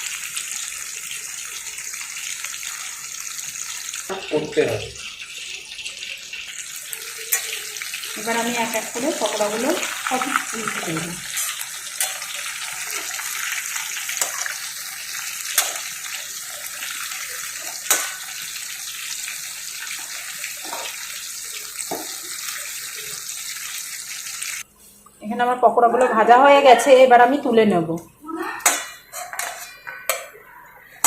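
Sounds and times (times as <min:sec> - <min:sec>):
deep-frying sizzle in hot oil: 0:00.0 - 0:24.7
utensil clicking against pan: 0:15.5 - 0:15.9.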